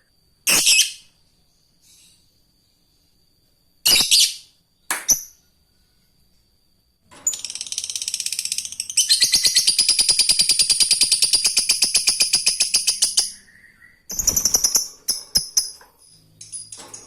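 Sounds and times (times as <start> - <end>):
lovebird harsh calls: 0.5 - 1.1, 12.7 - 15.8
lovebird rapid chattering trill: 7.3 - 13.4, 14.1 - 15.8.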